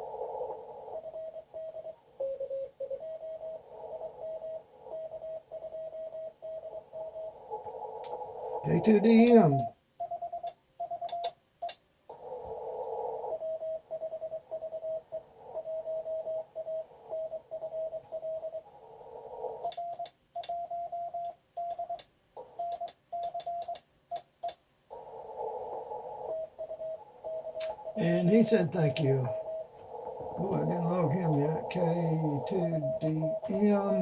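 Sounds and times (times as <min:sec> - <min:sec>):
radio receiver hiss: 0:06.6 - 0:09.8, 0:21.7 - 0:34.0
morse code tones: 0:08.6 - 0:11.8, 0:19.6 - 0:24.6, 0:30.4 - 0:34.0
sharp clicks: 0:09.2 - 0:11.8, 0:19.6 - 0:24.6, 0:27.6 - 0:27.8.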